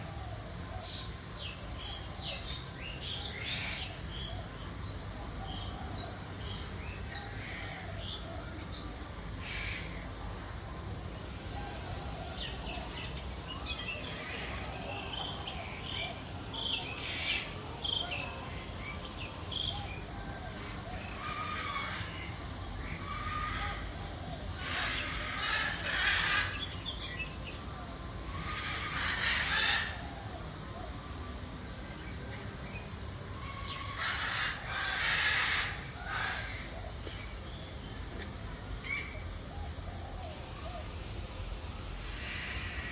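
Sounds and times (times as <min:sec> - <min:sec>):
birds chirping and calling: 0:12.0 - 0:30.9, 0:33.3 - 0:37.2.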